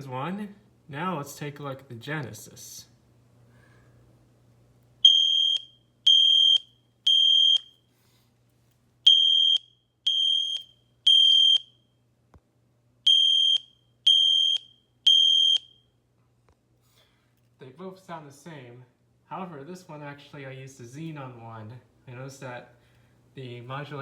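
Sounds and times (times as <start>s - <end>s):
fire alarm horn blasts: 5.0s - 7.8s, 9.1s - 12.0s, 13.1s - 15.8s.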